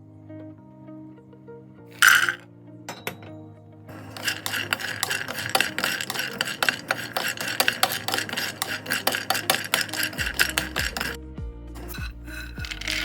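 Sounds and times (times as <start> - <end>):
nuts clattering in a dish: 2.0 - 2.4, 3.9 - 11.2, 11.8 - 13.0.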